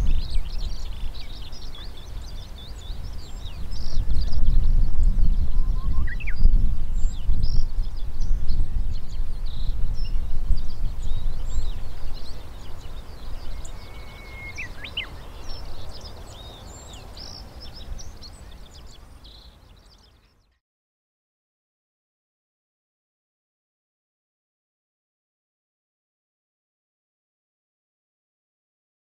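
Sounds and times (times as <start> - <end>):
wind rumble on microphone: 0.0 - 20.5
small birds chirping and twittering: 0.0 - 20.6.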